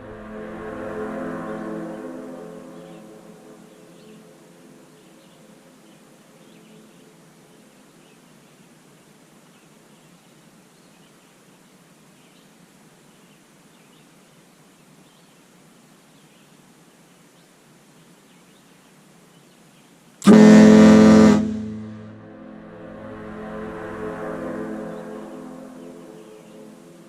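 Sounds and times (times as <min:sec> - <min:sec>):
ship air horn blast: 0:00.0 - 0:03.6, 0:20.2 - 0:26.8
horn echo off mountains: 0:00.0 - 0:04.8, 0:20.2 - 0:27.0.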